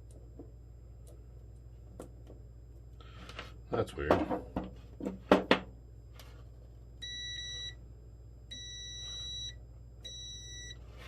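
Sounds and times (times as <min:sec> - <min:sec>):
multimeter beeping: 0:07.0 - 0:07.8, 0:08.5 - 0:10.8.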